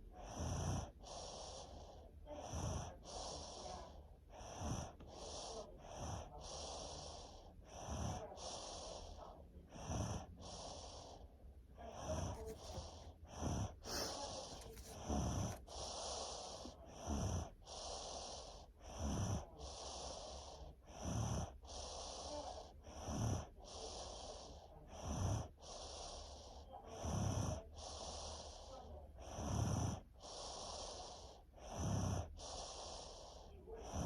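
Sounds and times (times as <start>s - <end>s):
loud low snoring: 0.2s - 11.2s, 11.9s - 34.0s
breathy hiss: 13.8s - 16.7s.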